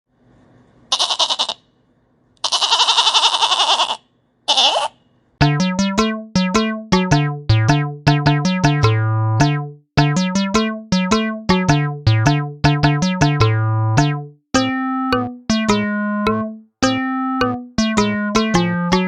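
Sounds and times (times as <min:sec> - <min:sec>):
bouncy keyboard melody with bass: 0:05.4 - 0:19.0.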